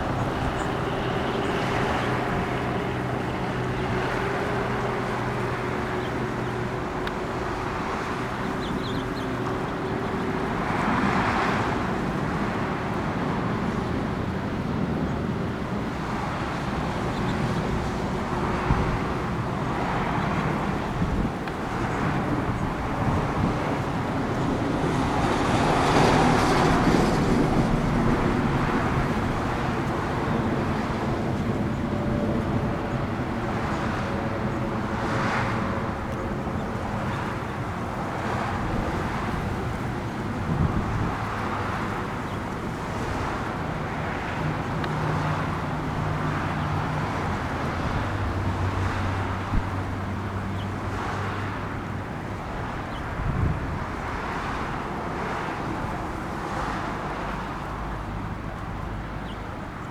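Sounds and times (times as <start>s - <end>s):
road traffic roar: 0.0s - 59.9s
vehicles passing: 0.0s - 59.9s.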